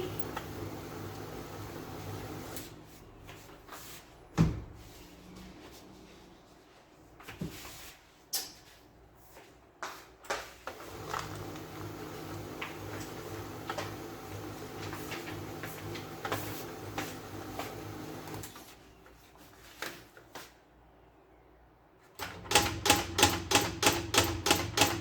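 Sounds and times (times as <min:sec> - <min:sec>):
laser printer humming: 0:00.0 - 0:02.6.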